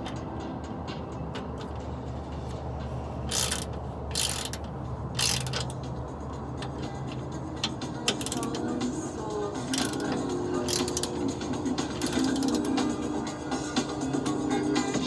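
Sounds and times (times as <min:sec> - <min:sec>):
socket ratchet clicking: 0:03.3 - 0:05.9, 0:07.7 - 0:09.0, 0:09.6 - 0:13.0.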